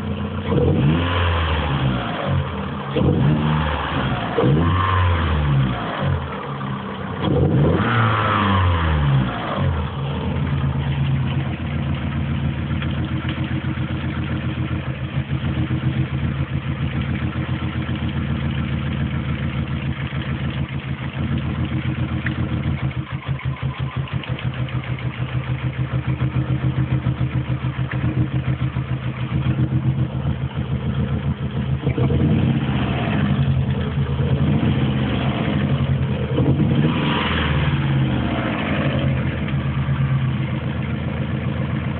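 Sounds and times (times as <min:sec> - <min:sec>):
car engine revving and idling: 0:00.0 - 0:41.9.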